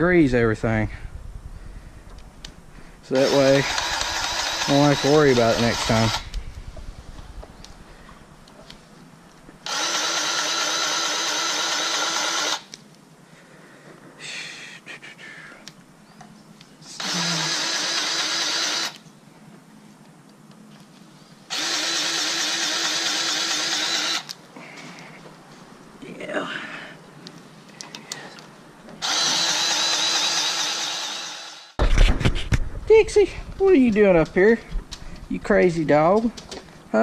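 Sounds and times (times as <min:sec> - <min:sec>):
grease gun whirring: 0:03.0 - 0:07.5, 0:09.6 - 0:12.8, 0:16.9 - 0:19.0, 0:21.5 - 0:24.4, 0:29.0 - 0:31.8.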